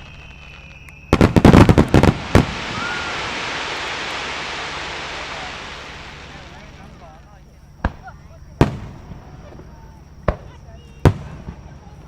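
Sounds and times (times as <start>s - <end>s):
fireworks hiss: 0.0s - 11.6s
fireworks bangs: 0.0s - 11.8s.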